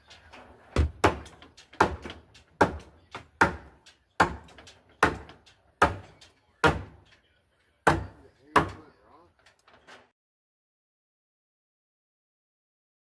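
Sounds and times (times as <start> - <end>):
hammer striking wood: 0.7 - 7.1, 7.8 - 8.9.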